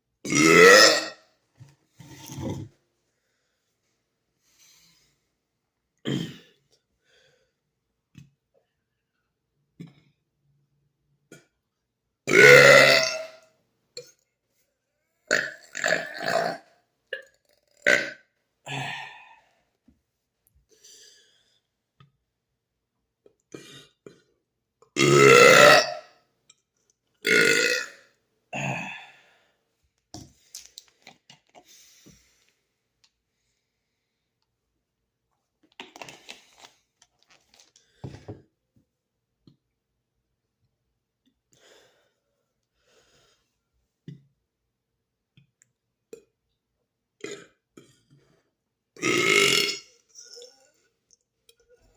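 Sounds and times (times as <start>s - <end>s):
man burping loudly: 0.2s - 1.2s, 12.3s - 13.4s, 15.3s - 19.4s, 25.0s - 26.1s, 27.2s - 29.2s, 47.2s - 47.6s, 49.0s - 49.9s.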